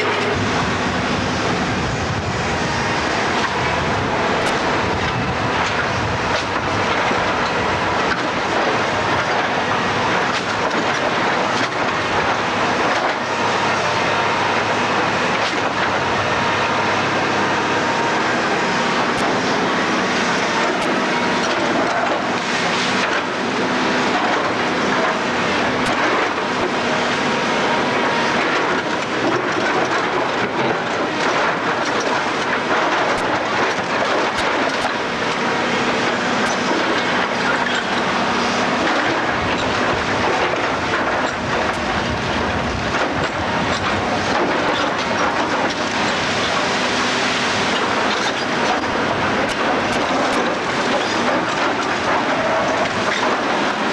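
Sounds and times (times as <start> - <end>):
heavy demolition machinery running: 0.0 - 53.9
metal and rubble crunching: 17.7 - 53.9.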